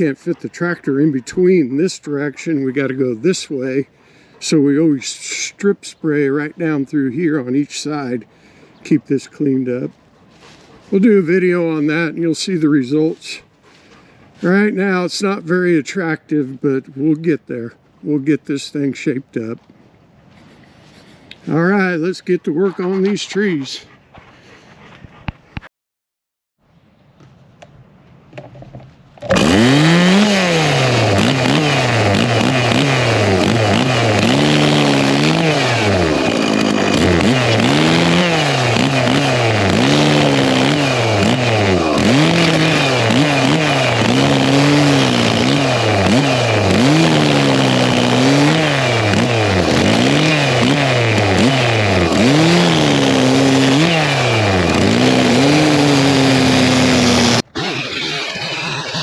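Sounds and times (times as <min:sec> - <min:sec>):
chainsaw cutting wood: 0:29.2 - 0:59.0.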